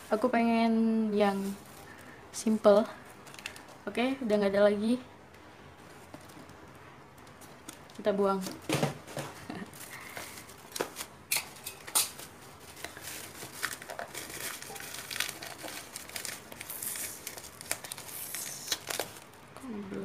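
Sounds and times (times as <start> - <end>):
packaging crinkling: 3.0 - 3.8, 9.7 - 19.6.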